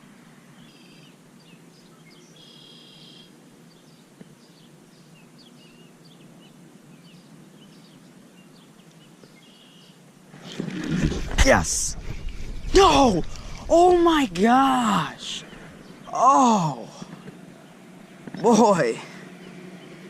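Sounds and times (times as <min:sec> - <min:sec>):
birds chirping: 0:00.6 - 0:20.0
rush of noise: 0:10.6 - 0:17.2.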